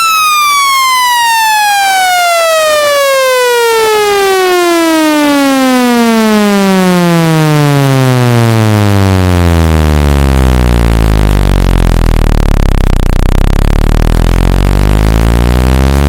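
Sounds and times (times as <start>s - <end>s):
buzzy electronic tone sliding down: 7.0s - 16.0s.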